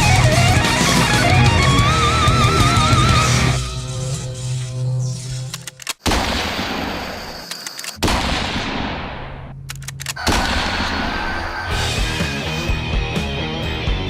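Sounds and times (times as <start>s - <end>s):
rock music with steady beat: 0.0s - 3.6s, 11.8s - 14.0s.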